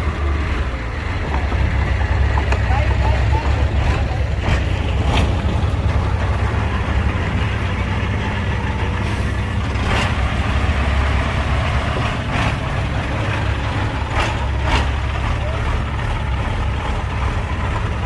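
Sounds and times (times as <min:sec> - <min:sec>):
diesel engine droning: 0:00.0 - 0:18.0.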